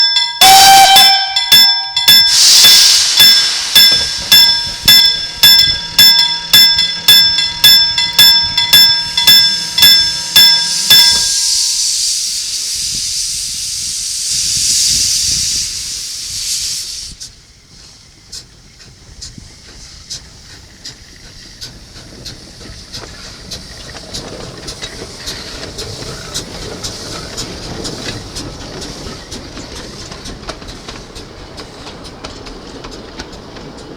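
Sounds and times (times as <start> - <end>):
mechanical level-crossing bell ringing: 0.0 - 11.6
steam locomotive hissing steam: 0.0 - 33.9
train rumbling and clicking: 0.0 - 33.9.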